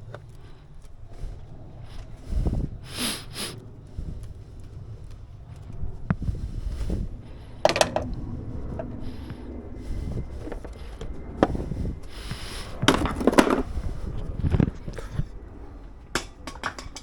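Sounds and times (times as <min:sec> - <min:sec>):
rubbing and low rumbling: 0:00.0 - 0:17.0
tools clattering: 0:07.7 - 0:08.1, 0:16.2 - 0:17.0.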